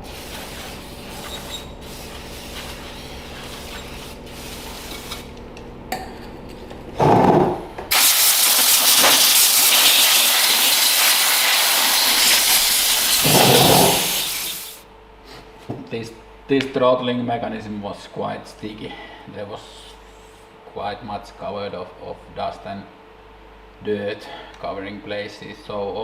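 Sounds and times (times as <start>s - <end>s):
pressurised spray hissing: 7.9s - 14.8s.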